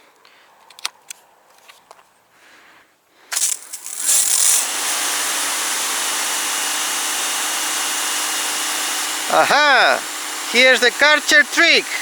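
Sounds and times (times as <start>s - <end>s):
pressure washer water jet hissing: 3.3s - 12.0s
pump motor humming: 3.3s - 12.0s.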